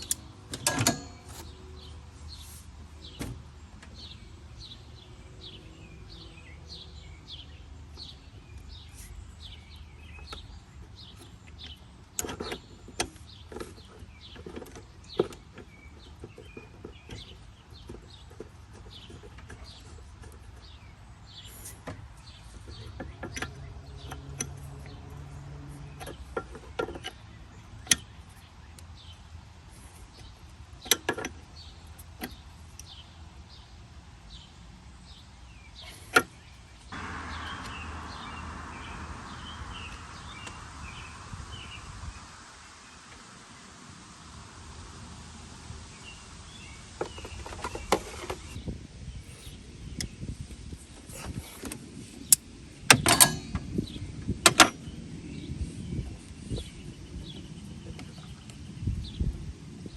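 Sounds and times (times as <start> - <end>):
small birds chirping: 0.0 - 59.9
steady hiss: 37.0 - 48.6.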